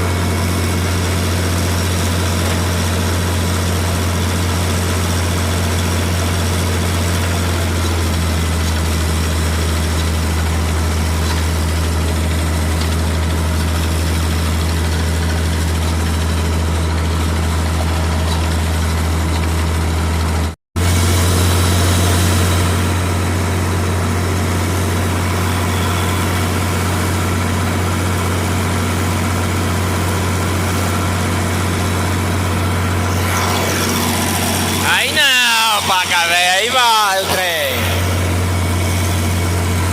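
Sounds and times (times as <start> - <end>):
air compressor engine hum: 32.0 - 39.9.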